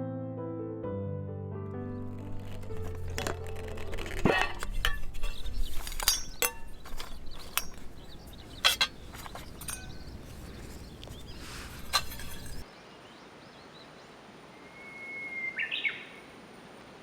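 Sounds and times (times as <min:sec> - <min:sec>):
faint outdoor background: 0:01.6 - 0:17.0
hard objects clinking and knocking: 0:01.9 - 0:12.6.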